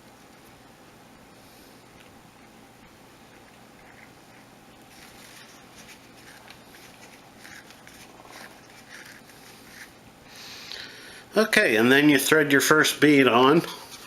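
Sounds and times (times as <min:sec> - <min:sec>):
cord rustling and ticking: 0:03.3 - 0:10.0.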